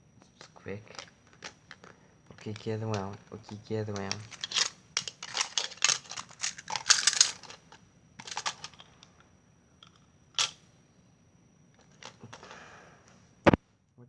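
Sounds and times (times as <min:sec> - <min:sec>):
small hard objects clattering: 0:00.4 - 0:09.0.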